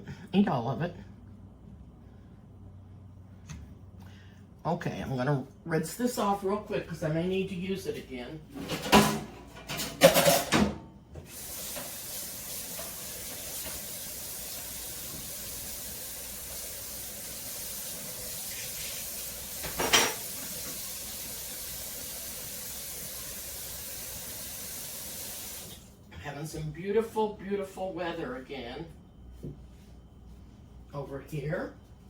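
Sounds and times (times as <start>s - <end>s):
kitchenware clatter: 8.5s - 10.8s, 19.5s - 20.9s
tap water running: 11.2s - 26.0s.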